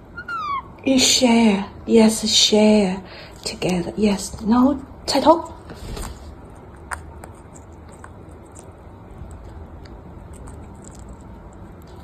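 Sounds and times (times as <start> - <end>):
steady low rumble: 0.0 - 12.0
beaks clicking on fruit: 6.5 - 12.0.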